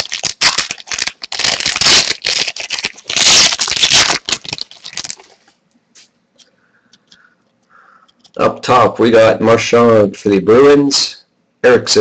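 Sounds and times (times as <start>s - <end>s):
foil wrapper crinkling and tearing: 0.0s - 5.5s.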